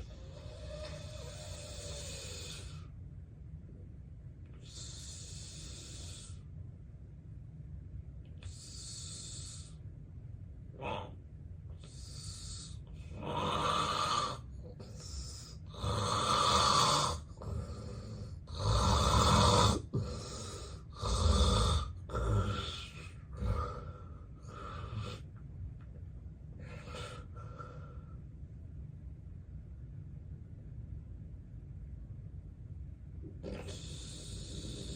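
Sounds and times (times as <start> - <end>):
man snoring heavily: 0.1 - 2.7, 12.2 - 14.4, 15.7 - 25.2, 33.4 - 34.9.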